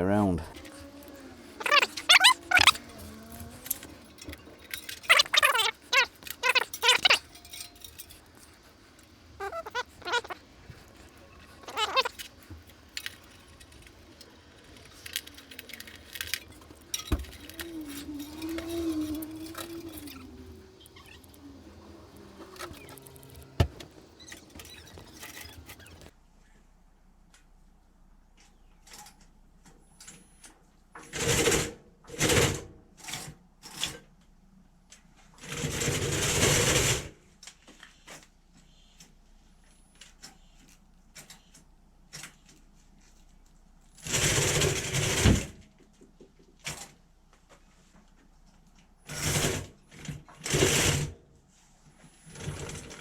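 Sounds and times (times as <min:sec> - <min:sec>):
electric motors and tracks running: 0:00.5 - 0:26.1, 0:43.9 - 0:45.6.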